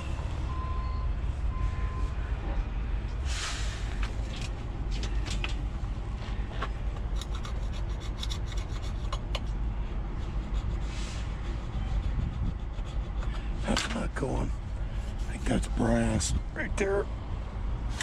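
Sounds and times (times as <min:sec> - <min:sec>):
steady low rumble: 0:00.0 - 0:18.0
rasping metal scrape: 0:07.2 - 0:09.5, 0:10.2 - 0:13.8.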